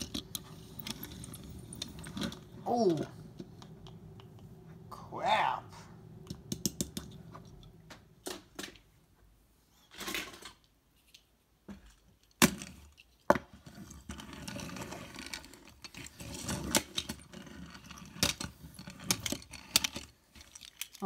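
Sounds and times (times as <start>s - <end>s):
toy cars clicking and clattering: 0.0s - 4.0s, 9.9s - 11.3s, 11.9s - 21.0s
rustling handling noise: 19.3s - 21.0s.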